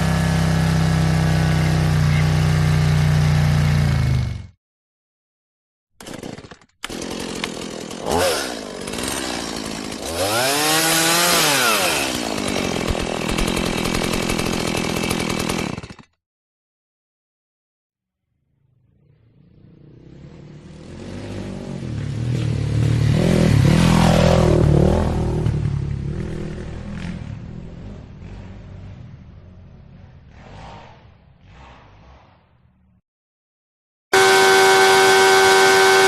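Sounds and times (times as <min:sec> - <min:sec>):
motorcycle engine running: 0:00.0 - 0:04.6, 0:10.3 - 0:15.7, 0:19.0 - 0:30.4, 0:34.2 - 0:36.0.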